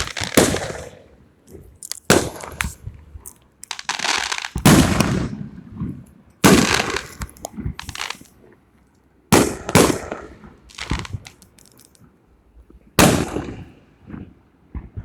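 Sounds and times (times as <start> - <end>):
loud sharp bangs: 0.0 - 1.0, 3.7 - 5.4, 6.4 - 8.2
faint cracks: 0.0 - 5.2, 6.0 - 9.0, 9.9 - 12.1.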